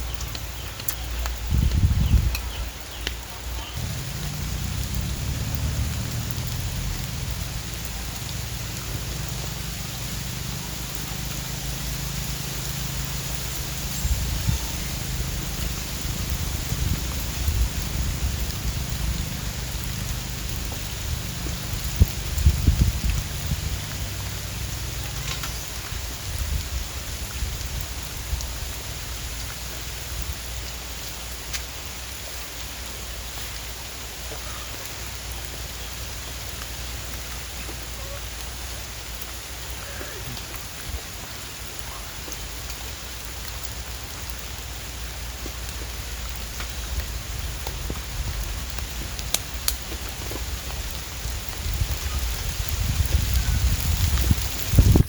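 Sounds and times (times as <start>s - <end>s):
rain drop ticks: 0.0s - 55.0s
steady rain falling: 0.0s - 55.0s
low rumble: 3.8s - 29.5s.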